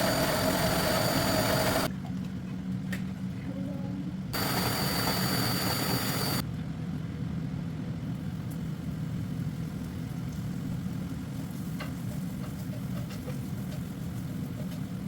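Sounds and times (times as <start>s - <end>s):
appliance motor hum: 0.0s - 1.9s, 4.4s - 6.4s
loud hiss with high whine: 0.0s - 1.9s, 4.4s - 6.4s.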